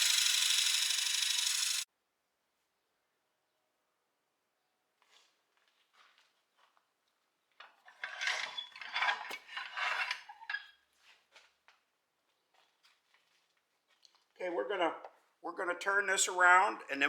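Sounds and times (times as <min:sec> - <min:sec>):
metal parts clattering and scraping: 0:07.6 - 0:10.8.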